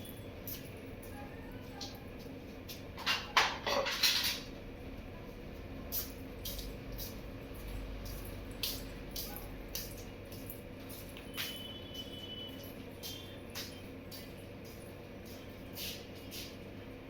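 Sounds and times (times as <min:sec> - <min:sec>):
faint clicks and taps: 0:05.6 - 0:11.6.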